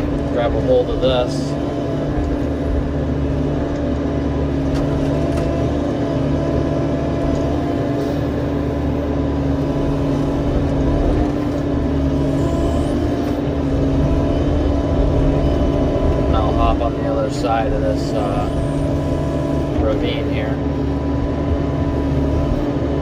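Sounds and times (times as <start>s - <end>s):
constant pitched hum: 0.0s - 23.0s
diesel engine running: 0.0s - 23.0s.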